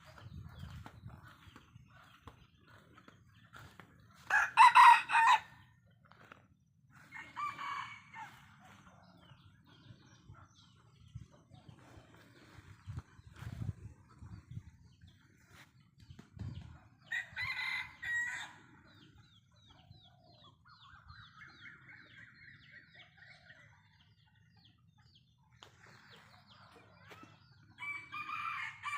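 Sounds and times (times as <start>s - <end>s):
rooster crowing: 4.2s - 5.6s, 7.1s - 8.5s, 27.8s - 28.9s.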